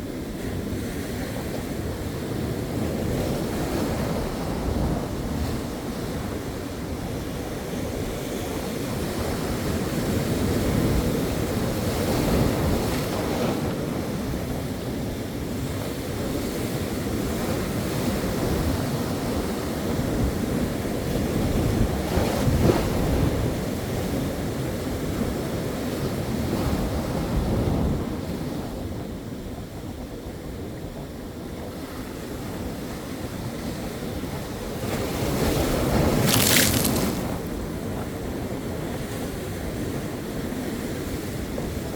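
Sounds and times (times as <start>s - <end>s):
ocean waves breaking: 35.8s - 37.7s.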